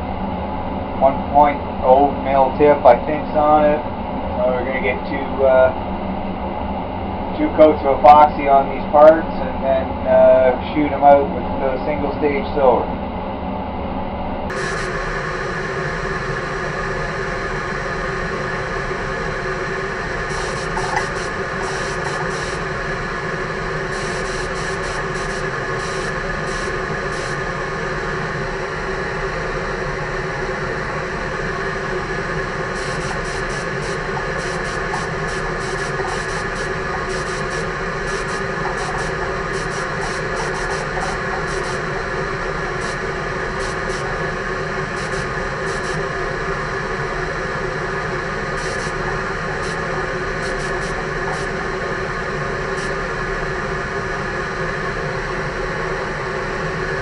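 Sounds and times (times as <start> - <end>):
steady machine hum: 0.0 - 57.0
spray gun air hiss: 14.5 - 16.7, 20.2 - 22.8, 23.7 - 27.6, 32.6 - 42.0, 42.7 - 44.3, 44.9 - 46.1, 48.5 - 49.0, 49.6 - 51.6, 52.7 - 53.0.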